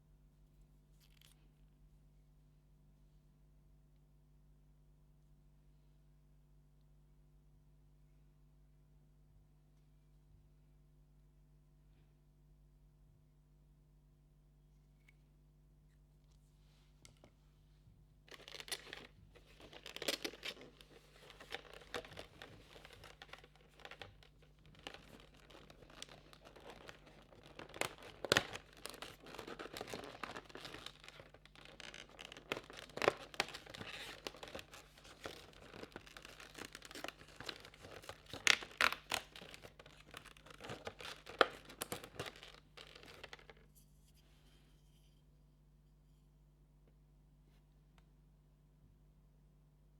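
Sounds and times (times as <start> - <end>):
cardboard tearing and crinkling: 18.3 - 43.5.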